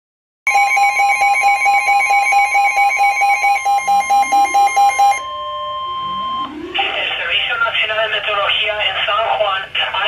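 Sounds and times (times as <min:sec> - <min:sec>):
rapidly pulsing alarm beep: 0:00.5 - 0:07.6
steady weather radio warning tone: 0:03.6 - 0:10.0.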